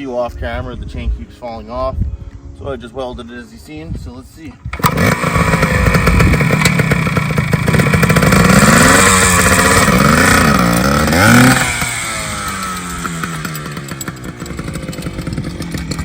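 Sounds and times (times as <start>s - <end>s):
dirt bike engine revving: 4.7s - 16.0s.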